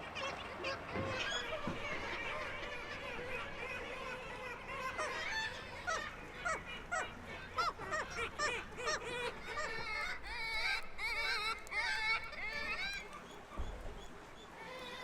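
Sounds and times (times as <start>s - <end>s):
seagulls calling: 0.0s - 15.0s.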